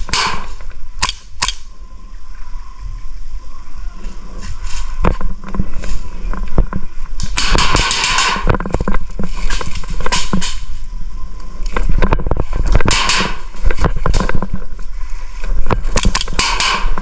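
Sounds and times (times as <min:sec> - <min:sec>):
airsoft guns firing: 0:00.0 - 0:01.6, 0:07.2 - 0:08.5, 0:12.8 - 0:13.5, 0:15.9 - 0:17.0.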